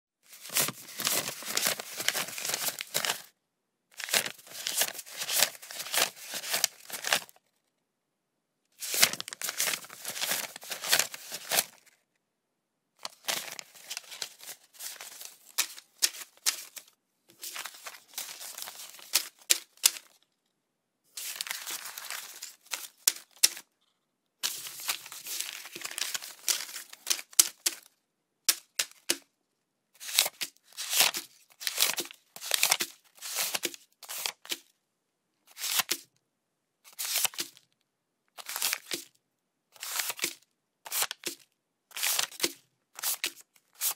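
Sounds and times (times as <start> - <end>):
banknotes being counted by hand: 0.4 - 3.2, 4.0 - 7.3, 8.8 - 11.8, 13.2 - 20.1, 24.4 - 27.9, 28.5 - 29.2, 30.0 - 34.6, 38.4 - 39.1, 39.8 - 43.9.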